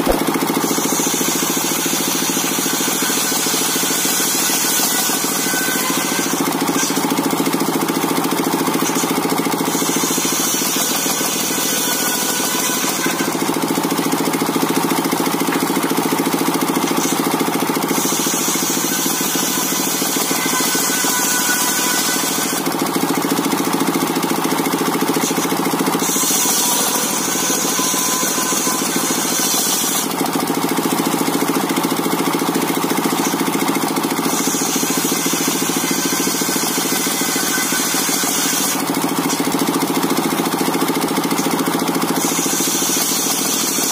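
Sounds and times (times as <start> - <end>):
sawmill motor drone: 0.0 - 43.9.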